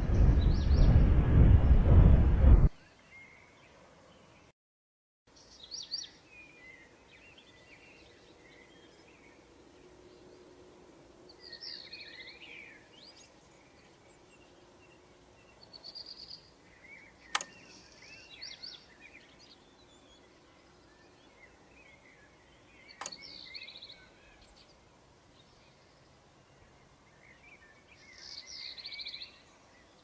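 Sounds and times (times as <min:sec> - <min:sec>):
birds chirping: 0:05.3 - 0:30.0
sharp click: 0:17.3 - 0:17.8, 0:23.0 - 0:23.5.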